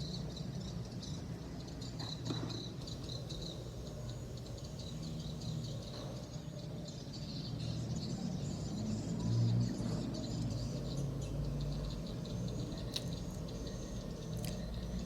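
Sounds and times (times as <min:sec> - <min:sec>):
chewing with wet mouth clicks: 0:12.8 - 0:13.2, 0:14.3 - 0:14.6.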